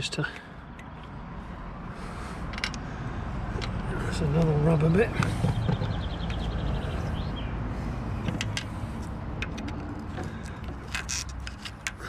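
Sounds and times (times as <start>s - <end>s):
screwdriver clicks and scrapes: 10.7s - 12.0s.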